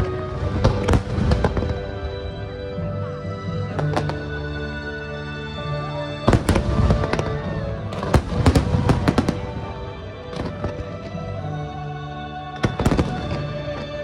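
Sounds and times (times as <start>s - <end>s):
fireworks bursting: 0.0s - 2.5s, 3.6s - 4.5s, 6.2s - 11.3s, 12.6s - 14.0s
music through loudspeakers: 0.0s - 14.0s.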